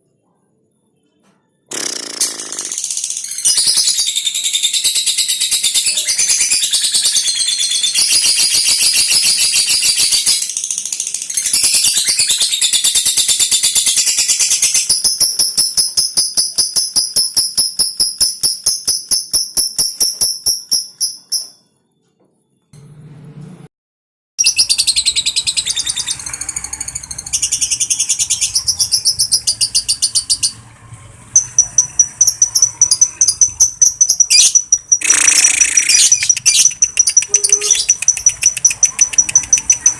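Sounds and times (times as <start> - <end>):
lovebird chattering trill: 31.4 - 39.9.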